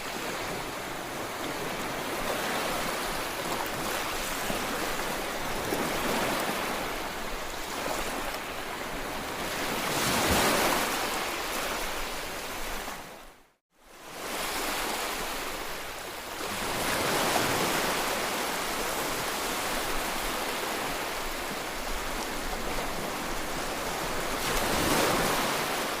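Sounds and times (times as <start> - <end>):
ocean waves washing in: 14.1 - 26.0.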